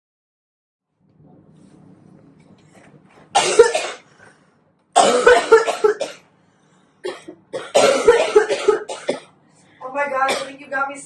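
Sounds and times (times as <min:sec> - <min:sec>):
person coughing hard: 0:03.3 - 0:04.1, 0:05.0 - 0:06.3, 0:07.0 - 0:09.4, 0:10.3 - 0:10.6.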